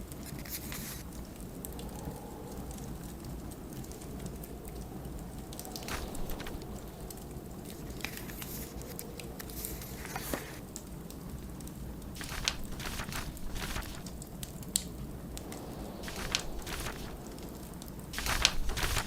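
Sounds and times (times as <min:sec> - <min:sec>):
blizzard wind rumble: 0:00.0 - 0:19.0
wood fire crackling and popping: 0:00.0 - 0:19.0.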